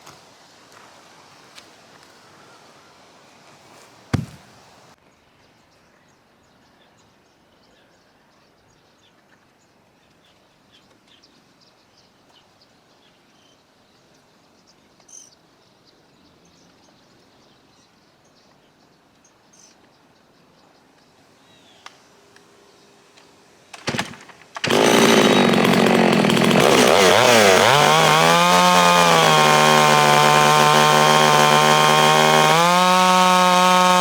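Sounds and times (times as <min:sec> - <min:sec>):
sharp knock: 0:04.2 - 0:04.5
faint insect or bird chirps: 0:05.2 - 0:18.4.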